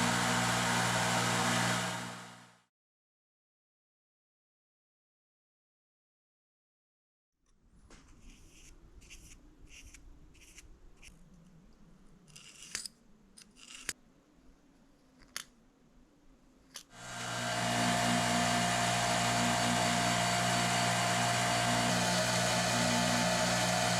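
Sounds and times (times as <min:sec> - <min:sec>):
power tool motor humming: 0:00.0 - 0:02.5, 0:17.0 - 0:23.9.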